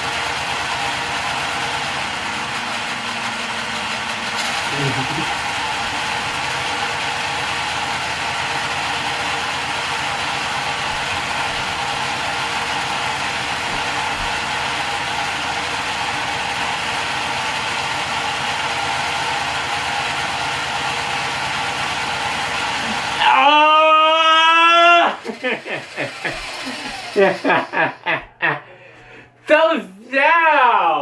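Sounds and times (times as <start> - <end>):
spinning mechanism whirring: 0.0 - 28.2.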